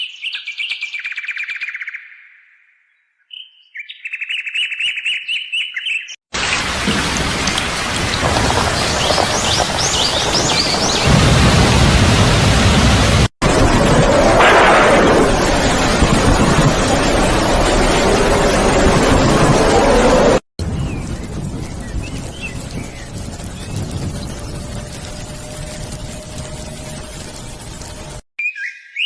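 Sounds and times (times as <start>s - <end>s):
rain rushing: 6.3s - 28.2s.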